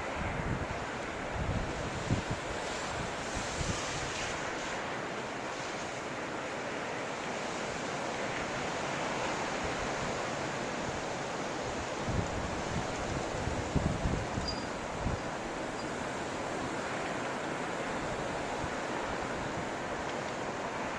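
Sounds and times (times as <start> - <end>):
wind buffeting microphone: 0.0 - 4.7, 12.0 - 15.6
blizzard wind hissing: 0.0 - 20.9.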